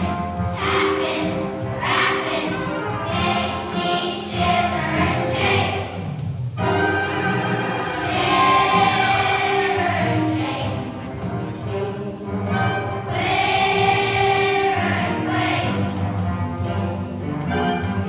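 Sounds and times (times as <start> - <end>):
children's choir singing: 0.0 - 18.0
musical accompaniment: 0.0 - 18.0.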